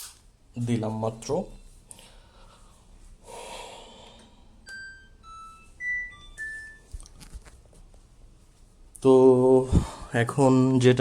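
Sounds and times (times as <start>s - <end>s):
washing machine start-up beeps: 4.6s - 6.9s.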